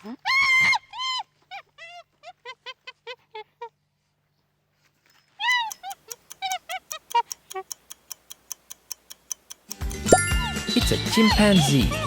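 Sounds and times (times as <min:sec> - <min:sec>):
steady ticking: 0:05.7 - 0:10.5.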